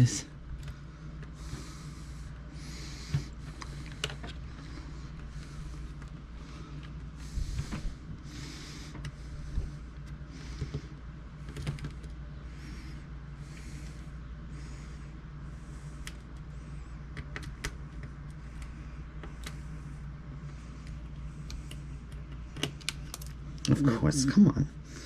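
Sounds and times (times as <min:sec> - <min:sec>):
steady low hum: 0:00.0 - 0:25.0
breathing close to microphone: 0:00.8 - 0:11.7, 0:12.3 - 0:17.1.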